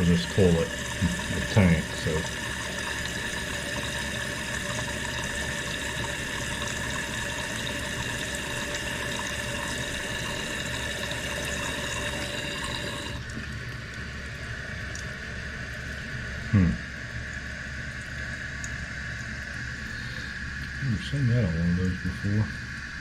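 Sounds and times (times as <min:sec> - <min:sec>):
toilet tank refilling hiss: 0:00.0 - 0:13.6.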